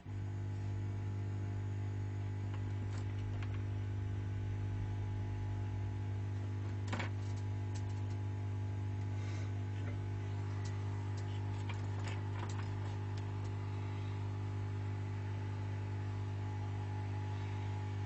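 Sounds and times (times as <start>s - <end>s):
hot air blower humming: 9.0s - 18.0s.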